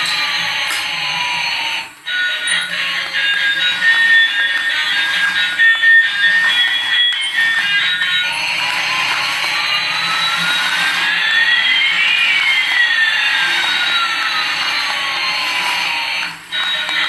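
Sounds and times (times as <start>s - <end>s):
rising and falling whistling tones: 9.9s - 14.3s.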